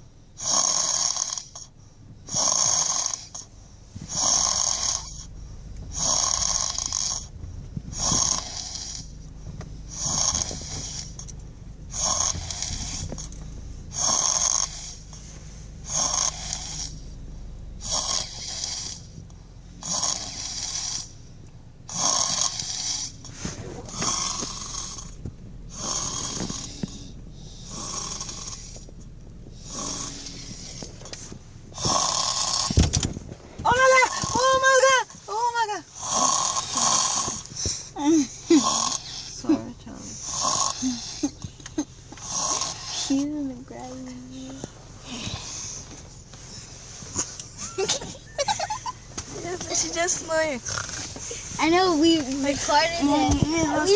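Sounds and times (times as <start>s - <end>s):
child snoring: 0.4s - 3.5s, 4.1s - 5.3s, 5.9s - 7.3s, 7.9s - 9.3s, 9.9s - 11.3s, 11.9s - 15.2s, 15.8s - 17.1s, 17.8s - 19.1s, 19.8s - 21.2s, 21.9s - 28.9s, 29.6s - 31.1s, 31.8s - 33.0s, 33.7s - 35.0s, 35.9s - 43.3s, 44.3s - 45.9s, 50.6s - 51.4s, 52.4s - 53.9s.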